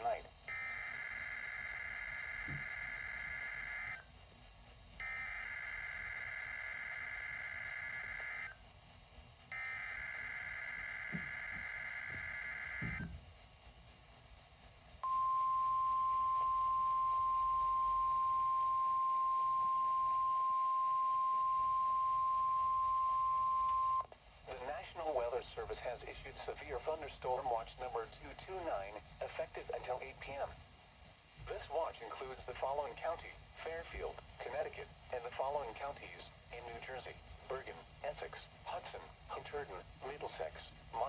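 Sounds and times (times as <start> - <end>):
single-pitch warning alarm tone: 0.5 - 4.0, 5.0 - 8.6, 9.5 - 13.1, 15.0 - 24.1.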